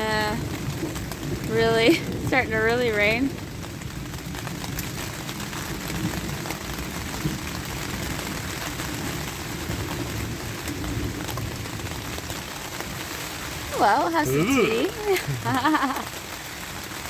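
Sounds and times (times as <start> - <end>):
rain ticking on tarp awning: 0.0 - 17.0.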